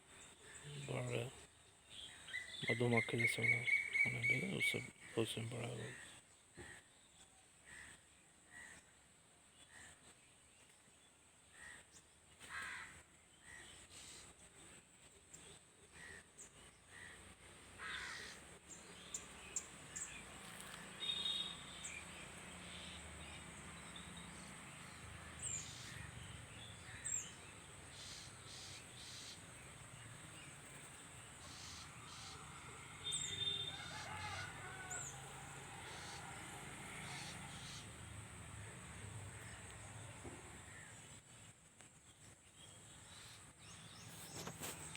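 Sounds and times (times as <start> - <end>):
birds chirping: 0.2 - 5.9, 17.8 - 44.9
harsh bird calls: 2.0 - 6.2, 24.9 - 41.0.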